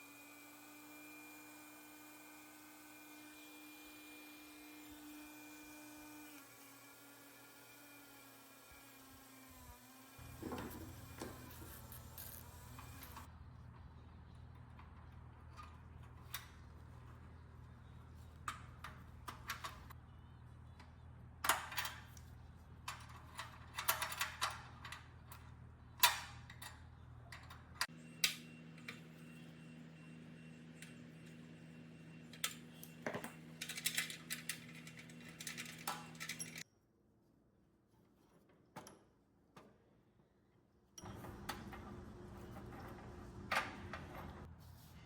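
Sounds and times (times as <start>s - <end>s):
small metal objects clinking: 10.9s - 13.3s.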